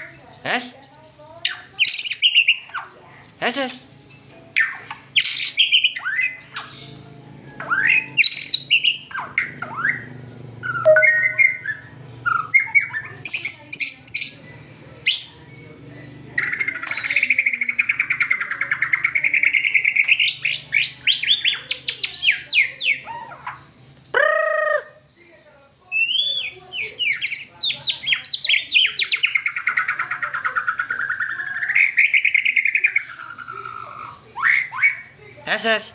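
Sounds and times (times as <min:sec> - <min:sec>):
bird singing whistles and chatter: 0:01.4 - 0:03.0, 0:04.6 - 0:07.0, 0:07.6 - 0:15.6, 0:16.4 - 0:24.9, 0:25.9 - 0:35.2
bird rapid trill: 0:07.7 - 0:14.4.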